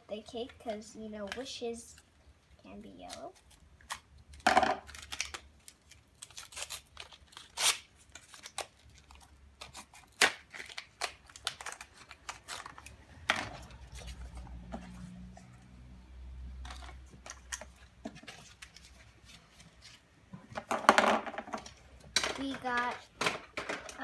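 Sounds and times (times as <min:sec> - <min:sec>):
packaging crinkling and tearing: 0:03.0 - 0:15.1.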